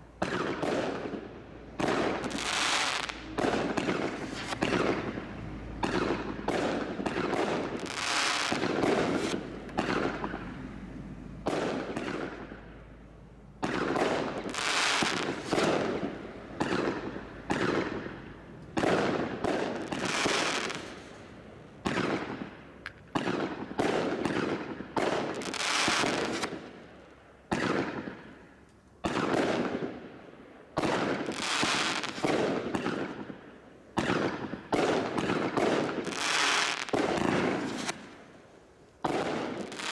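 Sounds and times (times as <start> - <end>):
fireworks bangs: 0.0 - 12.9, 13.6 - 26.9, 27.5 - 28.4, 29.0 - 30.2, 30.8 - 33.4, 34.0 - 38.3, 39.0 - 39.9.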